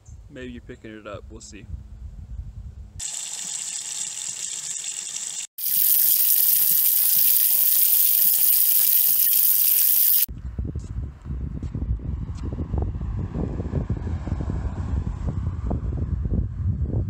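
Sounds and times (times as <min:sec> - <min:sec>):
low wind rumble: 0:01.6 - 0:03.0, 0:10.3 - 0:17.0
running water hissing: 0:03.0 - 0:10.3.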